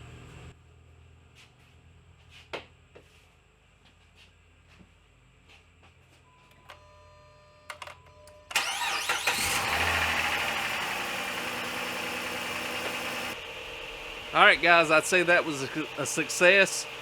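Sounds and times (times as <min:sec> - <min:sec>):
starter cranking: 0:08.5 - 0:13.4
car engine revving and idling: 0:08.6 - 0:17.0.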